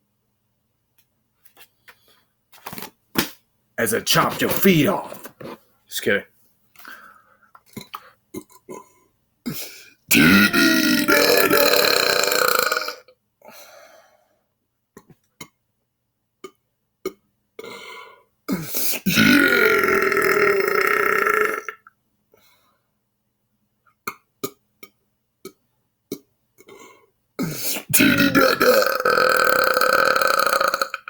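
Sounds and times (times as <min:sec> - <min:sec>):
man belching loudly: 0:10.1 - 0:13.1, 0:19.0 - 0:21.8, 0:27.4 - 0:31.0.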